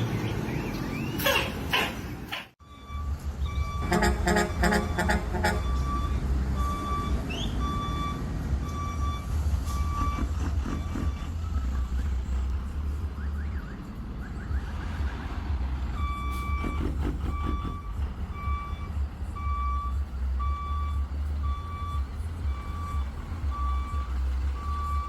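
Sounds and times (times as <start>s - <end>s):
bus engine rumbling: 0.0s - 25.0s
reversing alarm beeping: 2.6s - 12.4s, 16.0s - 25.0s.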